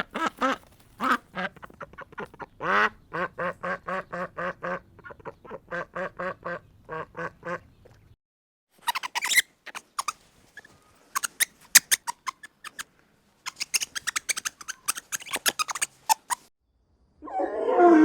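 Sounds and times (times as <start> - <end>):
poultry calling: 8.8 - 12.8, 13.5 - 16.4.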